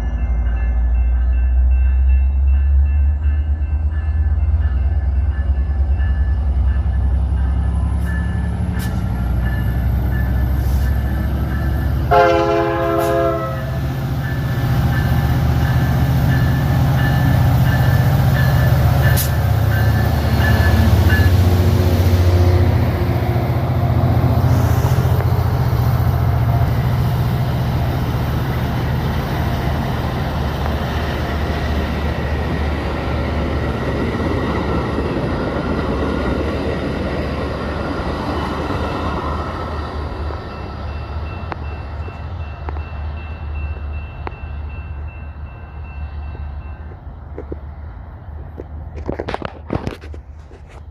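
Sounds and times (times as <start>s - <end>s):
diesel locomotive rumbling: 0.0s - 50.9s
train horn blast: 12.0s - 13.9s.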